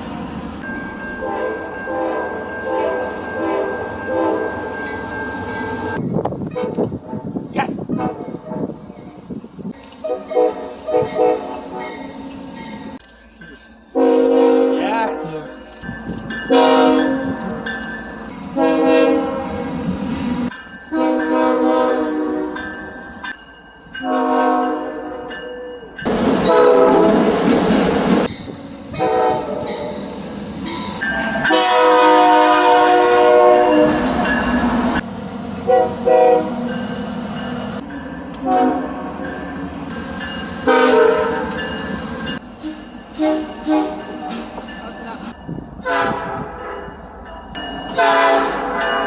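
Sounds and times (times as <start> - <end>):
passing train noise: 0.0 - 49.0
train horn chord blasts: 1.2 - 4.6, 13.9 - 15.3, 16.5 - 17.3, 18.5 - 19.7, 20.9 - 22.6, 24.0 - 25.2, 26.4 - 27.3, 28.9 - 29.7, 31.4 - 34.1, 35.6 - 36.7, 38.4 - 39.2, 40.6 - 41.5, 42.6 - 44.5, 45.8 - 46.8, 47.9 - 48.8.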